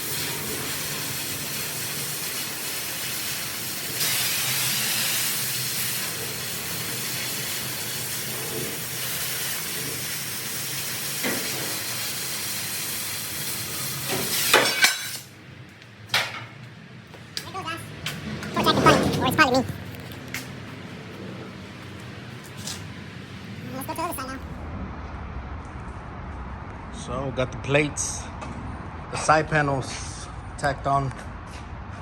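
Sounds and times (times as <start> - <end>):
cutting torch hissing: 0.0 - 15.4.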